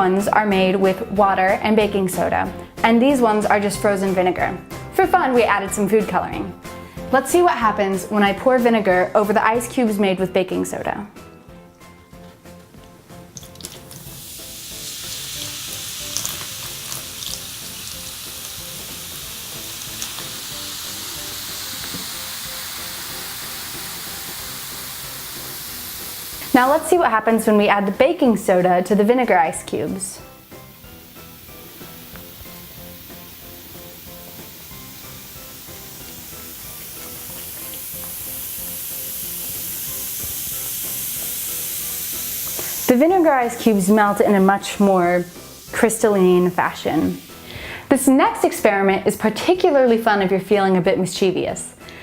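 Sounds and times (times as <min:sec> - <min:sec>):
vinegar fizzing on ice: 0:13.4 - 0:48.6.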